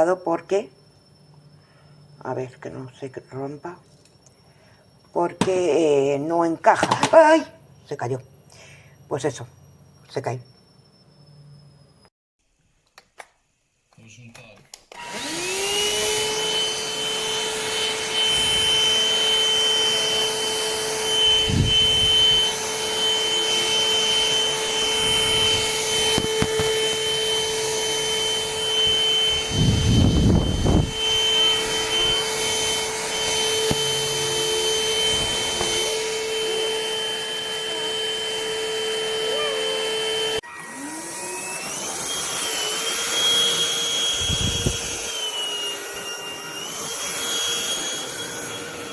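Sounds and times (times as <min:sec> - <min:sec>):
stick vacuum whining: 0:14.8 - 0:48.9.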